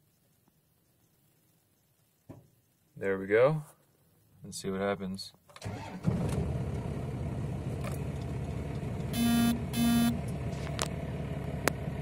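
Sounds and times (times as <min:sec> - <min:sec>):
diesel engine idling: 0:06.4 - 0:12.0
short electronic beeps: 0:09.2 - 0:10.2.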